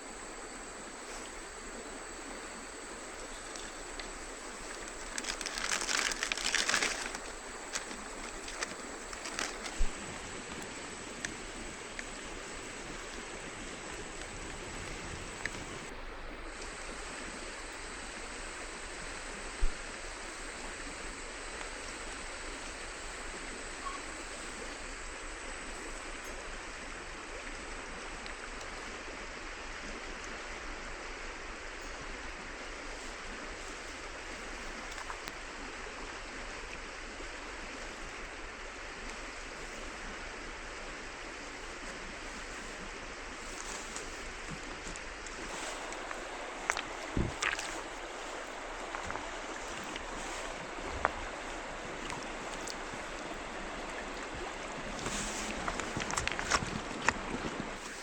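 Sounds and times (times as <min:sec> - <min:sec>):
river water rushing: 0:00.0 - 0:58.0.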